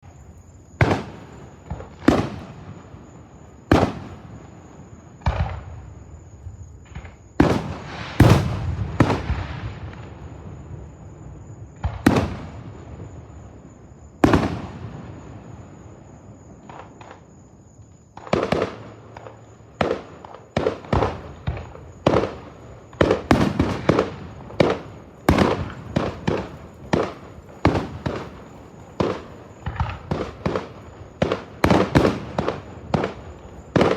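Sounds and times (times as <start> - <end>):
explosive bangs with rolling echo: 7.4 - 10.6, 19.8 - 33.9.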